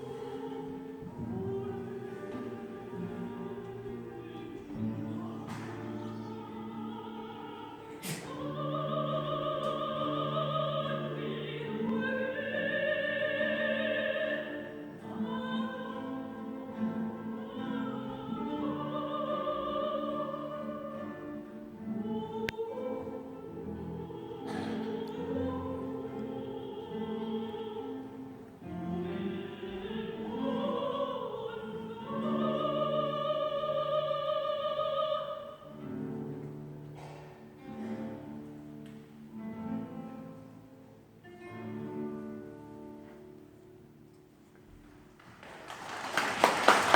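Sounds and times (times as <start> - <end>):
soprano singing with vibrato: 0.0 - 36.7
guitar orchestra accompaniment: 0.0 - 46.9.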